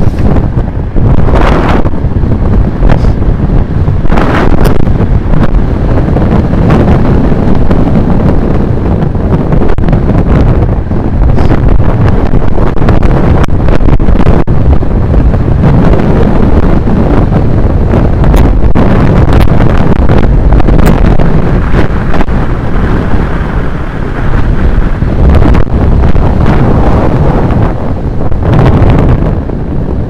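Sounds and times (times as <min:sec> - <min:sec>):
wind buffeting microphone: 0:00.0 - 0:30.0.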